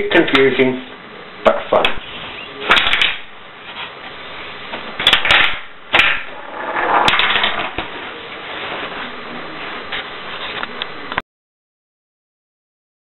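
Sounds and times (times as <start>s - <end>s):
marbles clattering through rockers: 5.1s - 7.9s.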